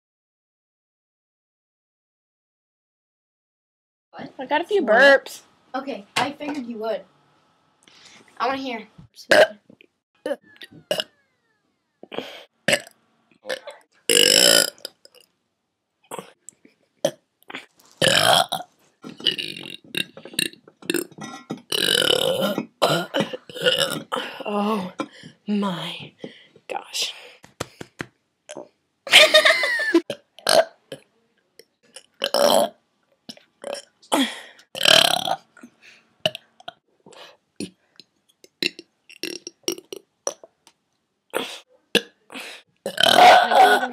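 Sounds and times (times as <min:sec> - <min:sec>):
woman burping: 0:09.3 - 0:09.6, 0:10.2 - 0:11.2, 0:12.0 - 0:12.9, 0:13.5 - 0:15.2, 0:17.0 - 0:25.2, 0:33.6 - 0:35.7, 0:41.4 - 0:43.9.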